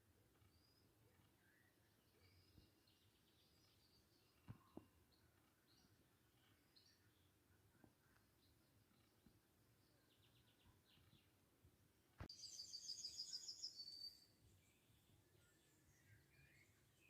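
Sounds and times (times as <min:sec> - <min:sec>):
small bird chirping and trilling: 0:12.3 - 0:17.0.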